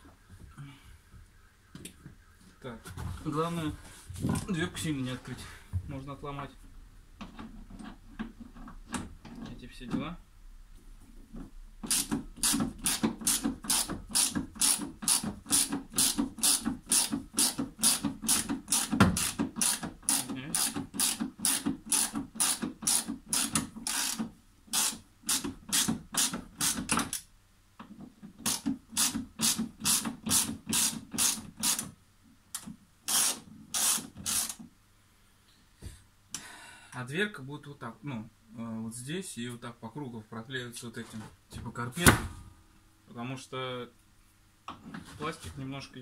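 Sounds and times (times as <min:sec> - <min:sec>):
ratchet wrench clicking: 0:11.8 - 0:27.2, 0:28.5 - 0:31.9, 0:33.1 - 0:34.6.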